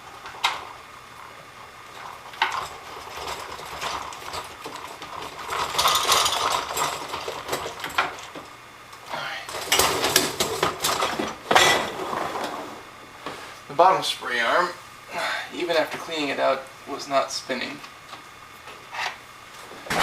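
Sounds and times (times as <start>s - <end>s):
dishwasher parts clattering: 2.0s - 8.4s, 9.5s - 12.6s.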